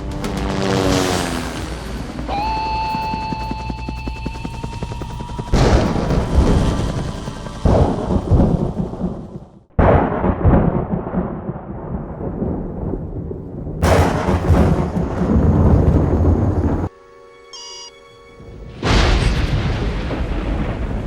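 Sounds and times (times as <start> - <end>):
thunderclaps: 5.0 - 16.9, 18.7 - 21.0
rolling thunder rumble: 5.4 - 16.9, 18.7 - 21.0.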